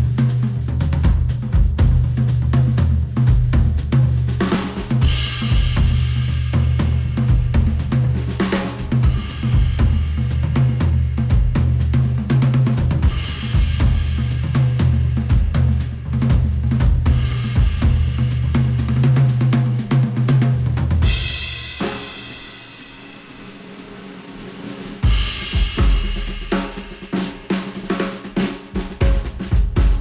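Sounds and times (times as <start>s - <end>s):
music with drums and bass: 0.0s - 30.0s
cymbal wash: 21.0s - 27.9s.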